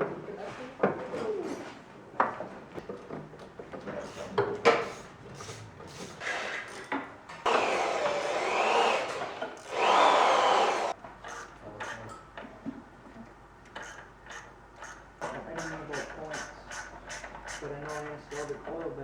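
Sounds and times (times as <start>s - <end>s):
power tool whining: 7.5s - 11.0s.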